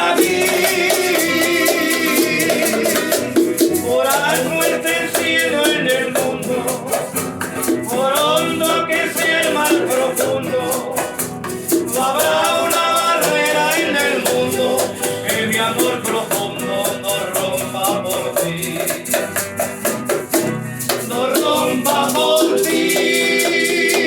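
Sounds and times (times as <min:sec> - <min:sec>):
latin band music: 0:00.0 - 0:24.0
maracas shaking: 0:00.0 - 0:24.0.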